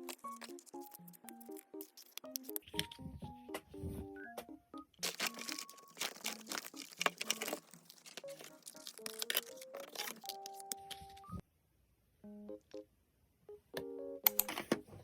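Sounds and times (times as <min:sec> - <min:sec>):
packaging crinkling and rustling: 0:00.0 - 0:03.1, 0:05.0 - 0:11.4
light plucked background music: 0:00.0 - 0:11.4, 0:13.5 - 0:15.0.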